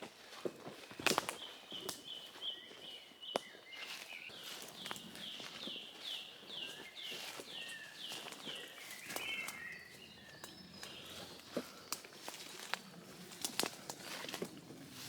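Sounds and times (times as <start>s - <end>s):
footsteps through leaf litter: 0.0s - 10.1s, 10.8s - 15.0s
songbird whistling: 6.6s - 11.5s.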